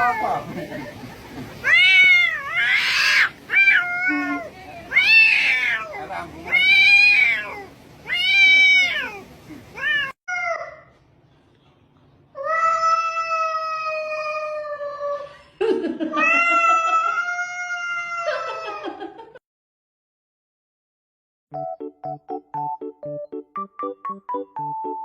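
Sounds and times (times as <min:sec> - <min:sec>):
cat meowing and yowling: 0:01.6 - 0:10.8, 0:12.4 - 0:15.2, 0:16.2 - 0:18.9.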